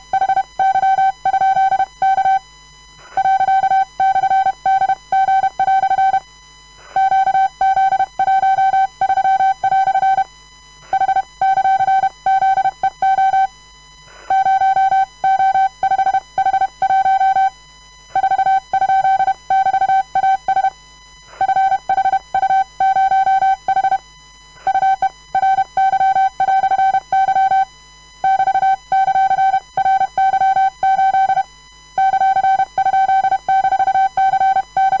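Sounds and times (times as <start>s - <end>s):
morse code beeps: 7.0s - 10.2s, 14.3s - 17.5s, 18.2s - 20.7s, 21.4s - 24.0s, 24.7s - 35.0s.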